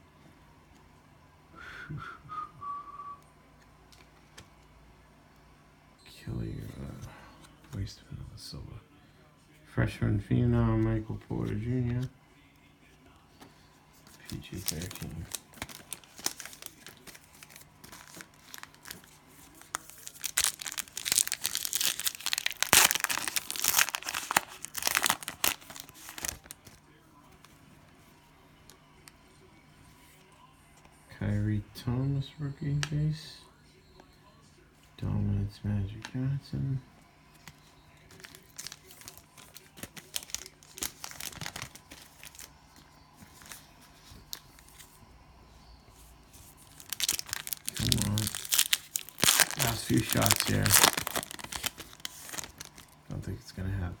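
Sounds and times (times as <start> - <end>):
cellophane wrapper crinkling and tearing: 14.1 - 26.8, 37.4 - 42.5, 46.4 - 53.1.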